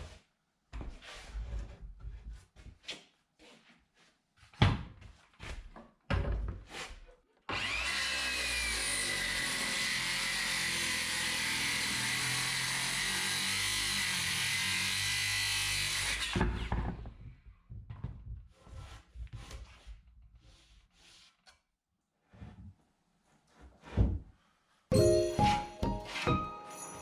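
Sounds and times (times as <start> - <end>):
woodworking power tool running: 7.5 - 15.8.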